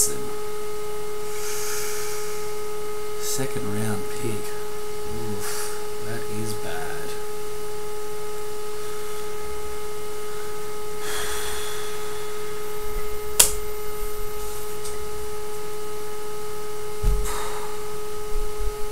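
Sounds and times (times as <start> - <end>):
steady electrical hum: 0.0 - 18.9
sharp click: 13.4 - 13.6.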